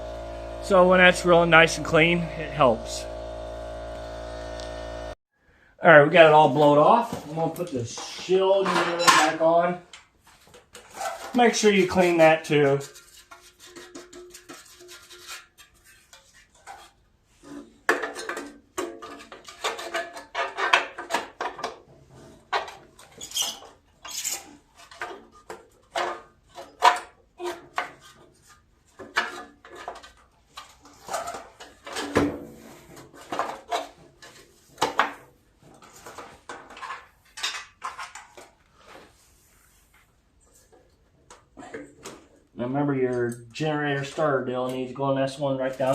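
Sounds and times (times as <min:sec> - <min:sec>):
sheet metal and tools clanking: 0:06.7 - 0:09.6.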